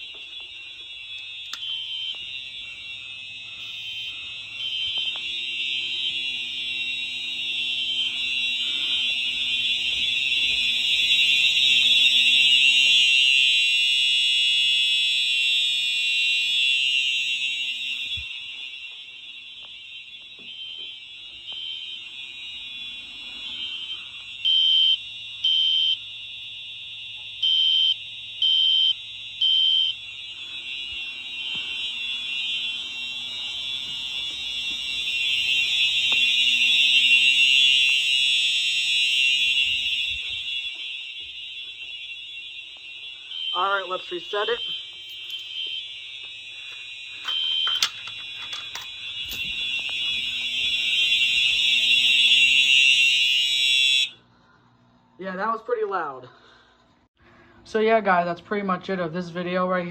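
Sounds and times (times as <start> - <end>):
fire alarm horn continuous tone: 0.0 - 54.5, 55.2 - 59.9
alarm horn short blasts: 43.2 - 45.6, 48.5 - 54.2.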